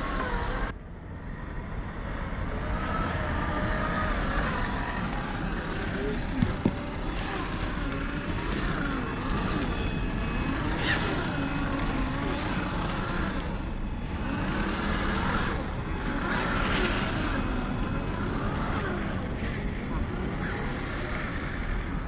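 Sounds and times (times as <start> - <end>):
electric motor and gears whining: 0.0 - 22.0.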